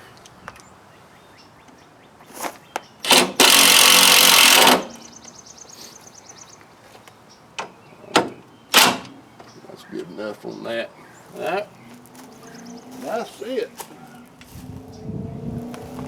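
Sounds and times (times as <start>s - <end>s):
impact wrench hammering: 3.0s - 5.1s, 8.2s - 9.2s.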